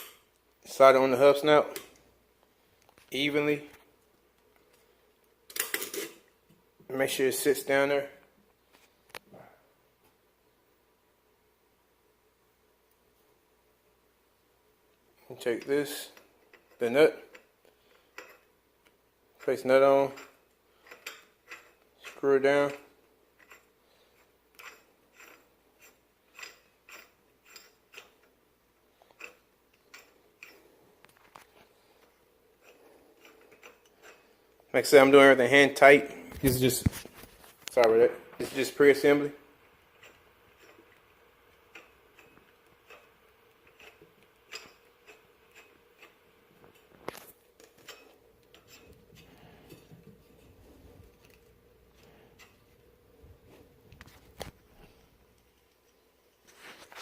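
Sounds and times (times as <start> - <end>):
faint metallic clicks and scrapes: 15.2 - 35.0, 36.3 - 57.0.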